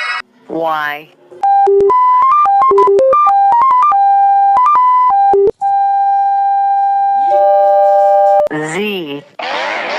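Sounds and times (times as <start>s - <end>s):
electronic beeping melody: 1.4s - 8.5s
long held beep: 1.4s - 8.5s.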